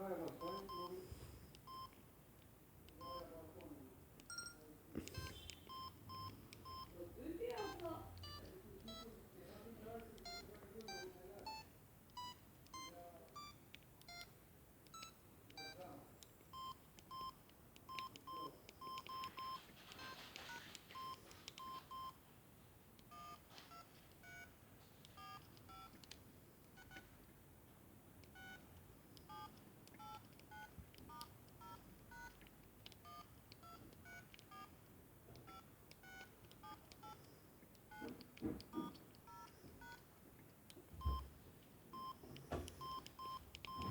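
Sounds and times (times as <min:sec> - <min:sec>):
phone ringtone beeping melody: 0:00.4 - 0:01.0, 0:07.6 - 0:09.1.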